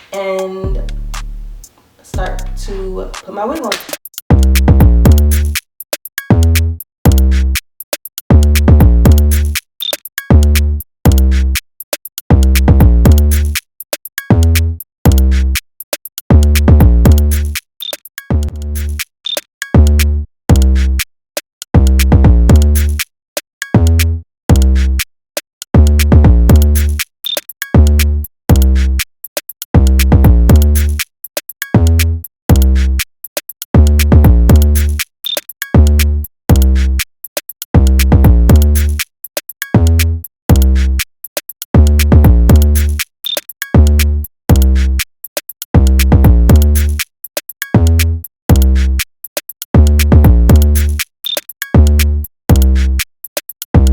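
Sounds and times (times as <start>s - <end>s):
hip hop drum machine beat: 0.0s - 21.0s, 21.8s - 23.0s, 25.8s - 47.0s, 47.6s - 53.9s
deep bass hits: 0.7s - 1.6s.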